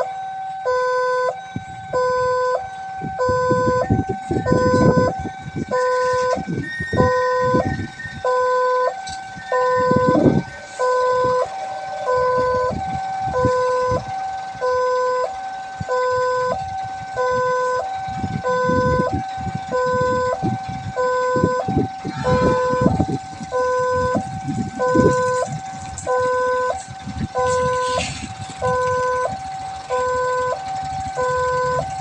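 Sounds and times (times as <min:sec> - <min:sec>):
low rumbling: 0:00.0 - 0:32.0
two-tone crossing warning siren: 0:00.0 - 0:32.0.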